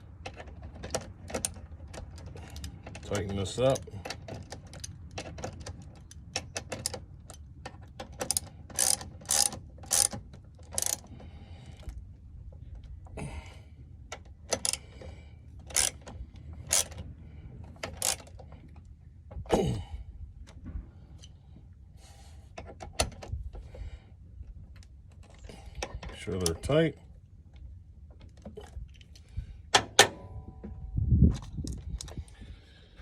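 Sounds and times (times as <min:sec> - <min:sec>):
hand tools clicking on metal: 0:00.3 - 0:11.1, 0:15.7 - 0:16.1, 0:17.8 - 0:18.3.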